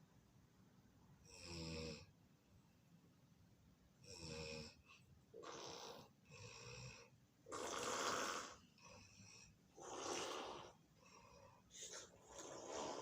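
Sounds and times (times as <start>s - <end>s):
person snoring: 5.4s - 8.6s, 9.8s - 13.0s.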